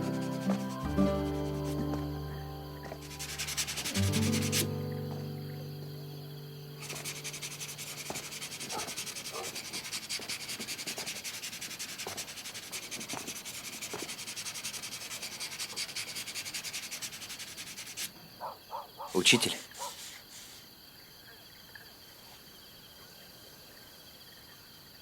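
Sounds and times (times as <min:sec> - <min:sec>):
hand sanding strokes: 0:00.0 - 0:02.1, 0:03.0 - 0:04.7, 0:06.8 - 0:18.1
music ending: 0:00.0 - 0:07.6.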